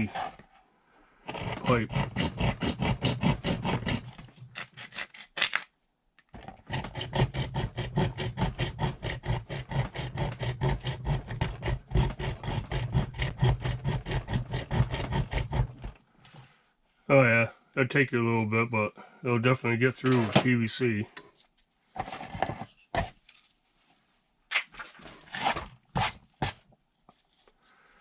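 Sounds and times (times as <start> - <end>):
saw cutting plastic pipe: 0.0 - 0.5, 1.2 - 5.7, 6.3 - 16.0, 25.0 - 26.7.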